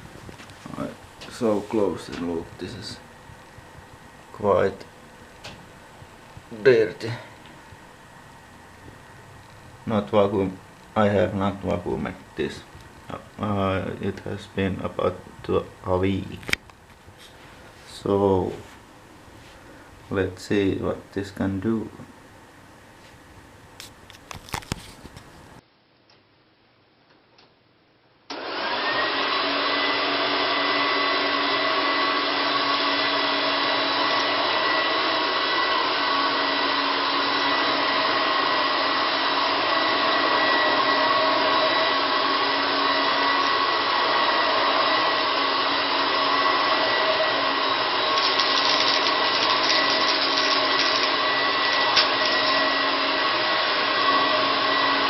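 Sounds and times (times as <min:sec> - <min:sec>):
vacuum cleaner motor whine: 0:00.0 - 0:14.8, 0:28.3 - 0:55.0.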